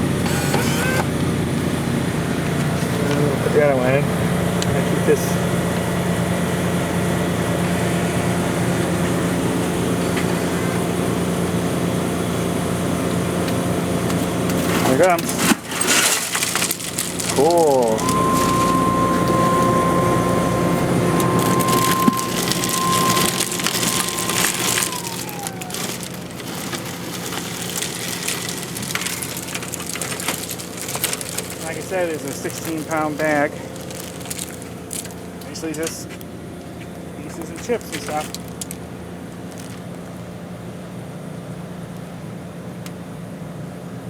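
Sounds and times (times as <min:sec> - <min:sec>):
vending machine humming: 0:00.0 - 0:44.0
bagged ice crunching and rustling: 0:14.0 - 0:36.3, 0:37.2 - 0:40.3.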